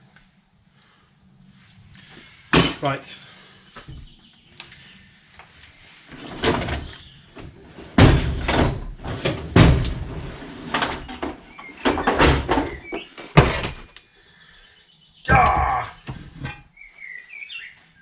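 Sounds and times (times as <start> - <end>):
heavy thuds on a workbench: 3.8 - 4.2, 13.4 - 13.9.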